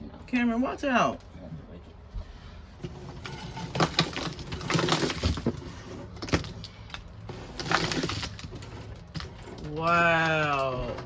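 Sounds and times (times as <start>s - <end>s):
ice clattering and clinking: 2.8s - 11.0s.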